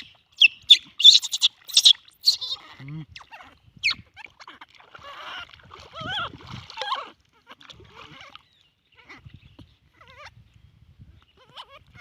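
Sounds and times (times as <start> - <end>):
baby monkey screaming: 0.0 - 7.1, 11.4 - 12.0.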